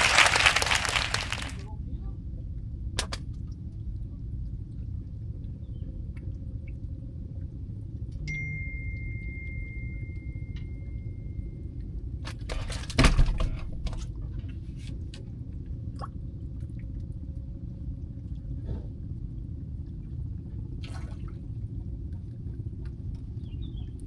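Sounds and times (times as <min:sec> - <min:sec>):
water splashing and dripping: 0:00.0 - 0:01.6
steady low rumble: 0:01.2 - 0:12.6, 0:13.6 - 0:24.0.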